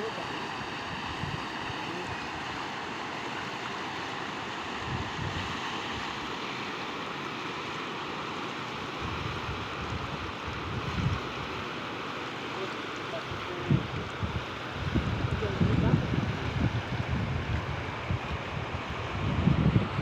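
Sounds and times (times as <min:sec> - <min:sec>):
floodwater rushing: 0:00.0 - 0:20.0
wind buffeting microphone: 0:04.8 - 0:05.5, 0:09.0 - 0:11.5, 0:13.5 - 0:20.0.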